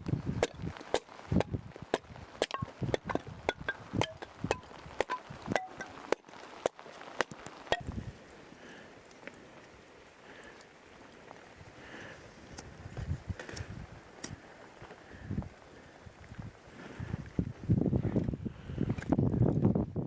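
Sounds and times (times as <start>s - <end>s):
firewood being chopped: 0.0s - 8.0s.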